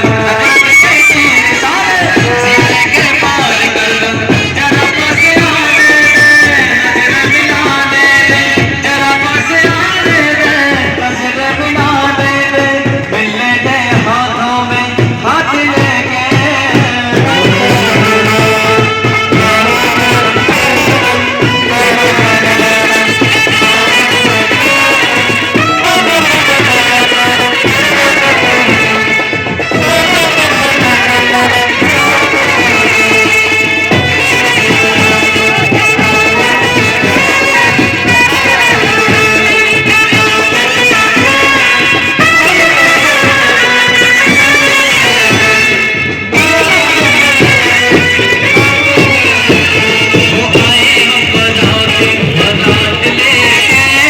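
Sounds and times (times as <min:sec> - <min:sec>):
steady drum beat: 0:00.0 - 0:54.0
gliding brass band melody: 0:17.1 - 0:54.0.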